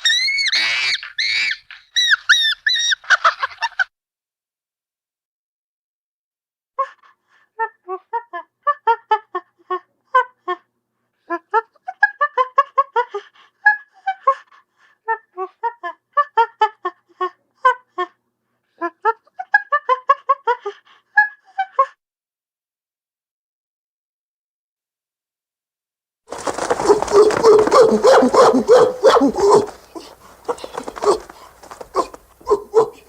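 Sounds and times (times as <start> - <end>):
chimpanzees grunting and panting: 26.3 - 33.0.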